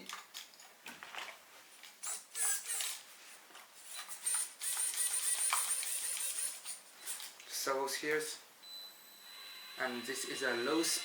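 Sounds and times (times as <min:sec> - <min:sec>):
small servos whirring: 0:02.0 - 0:03.0, 0:03.8 - 0:07.4
steady high whine: 0:08.6 - 0:11.0.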